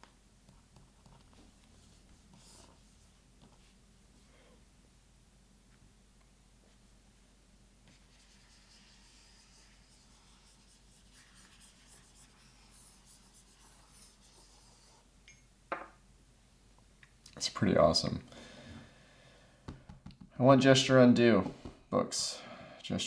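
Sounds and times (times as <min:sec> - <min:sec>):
stylus scratching on tablet screen: 0:00.5 - 0:03.7, 0:08.0 - 0:15.0.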